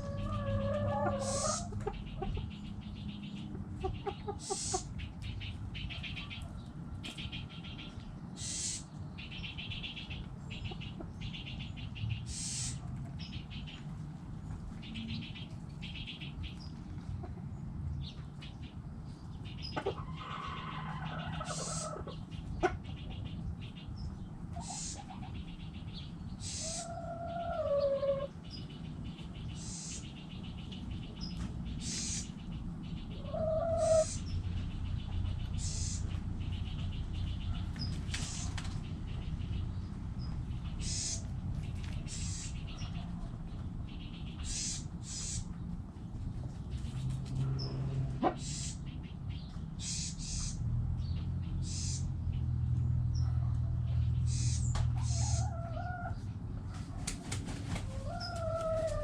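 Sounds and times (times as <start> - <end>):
drawn-out falling calls: 0.0 - 3.2, 3.8 - 6.6, 7.2 - 13.7, 19.7 - 23.2, 23.8 - 39.7, 40.6 - 45.6, 47.6 - 50.7, 51.5 - 52.2, 54.1 - 56.2, 57.6 - 59.0
chickens calling: 0.0 - 59.0.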